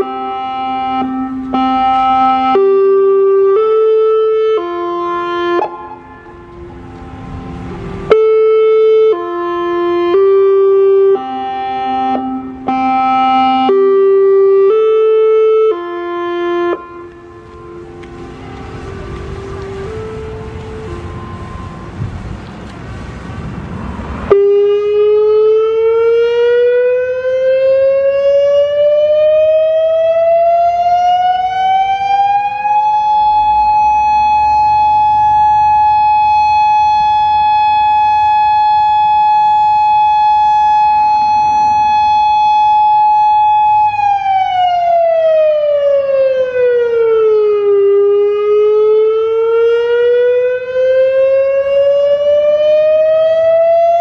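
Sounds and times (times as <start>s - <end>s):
electronic warning siren: 0.0s - 23.0s, 24.0s - 54.0s
noisy rumble: 0.0s - 26.1s.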